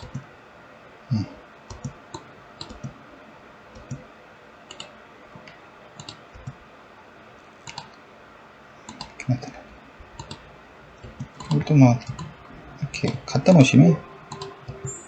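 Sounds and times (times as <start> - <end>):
mouse and keyboard clicks: 1.7 - 3.0, 3.8 - 4.0, 4.7 - 6.6, 7.7 - 8.0, 11.0 - 12.3, 14.3 - 14.9.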